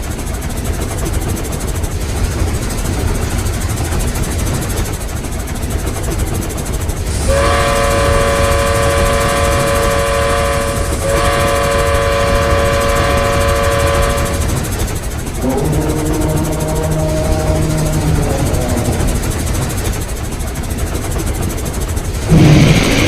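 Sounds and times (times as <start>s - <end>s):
train rumbling: 0.0s - 23.0s
steam train whistle blasts: 7.2s - 14.8s, 15.4s - 19.4s.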